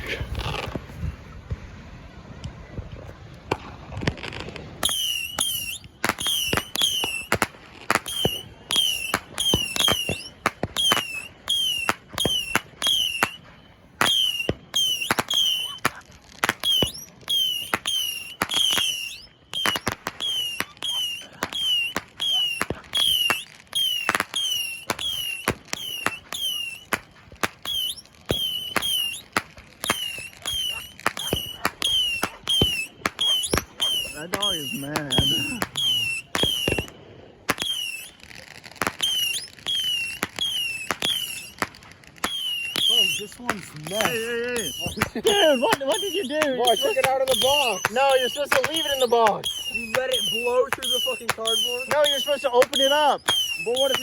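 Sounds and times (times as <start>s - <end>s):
whistling rockets firing: 3.5s - 54.0s.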